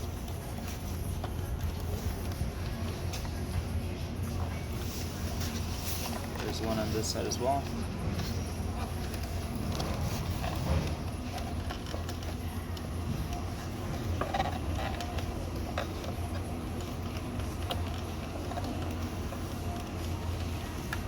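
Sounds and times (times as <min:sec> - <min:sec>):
steady low hum: 0:00.0 - 0:21.0
screwdrivers clicking and scraping plastic: 0:04.3 - 0:21.0.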